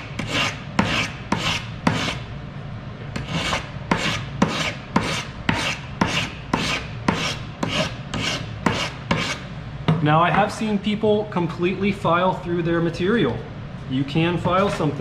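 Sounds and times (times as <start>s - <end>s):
hand file scraping metal: 0.0s - 2.2s, 3.2s - 9.4s.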